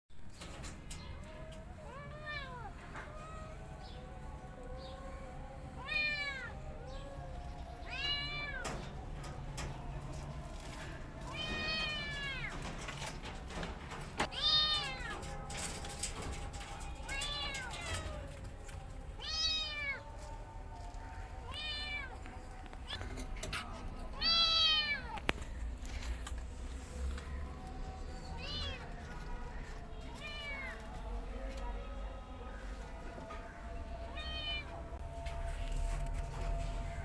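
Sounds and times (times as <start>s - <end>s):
cat meowing: 5.8s - 8.7s, 14.3s - 15.2s, 19.2s - 20.1s, 21.4s - 22.2s.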